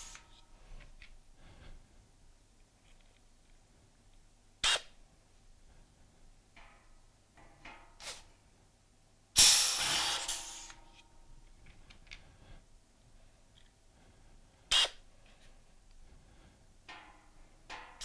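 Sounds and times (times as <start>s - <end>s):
loud hiss of exhausting air: 0.0s - 0.2s, 9.4s - 10.9s
pneumatic tool air burst: 0.0s - 0.2s, 4.6s - 4.9s, 8.0s - 8.3s, 9.4s - 11.0s, 14.7s - 15.0s.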